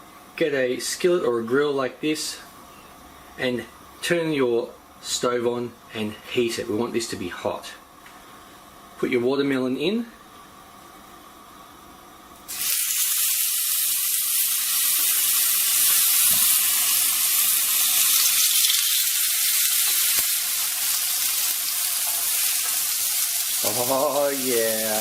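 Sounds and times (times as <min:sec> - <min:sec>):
food sizzling on a grill pan: 0:12.5 - 0:25.0.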